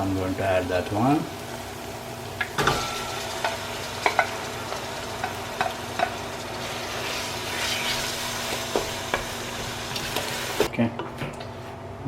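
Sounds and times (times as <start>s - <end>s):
food sizzling in a pot: 0.0s - 10.7s.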